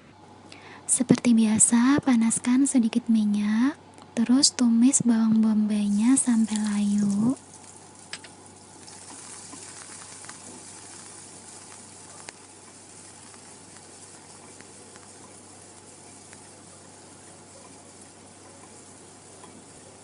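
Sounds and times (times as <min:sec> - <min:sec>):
onion sizzling in oil: 0:04.9 - 0:20.0.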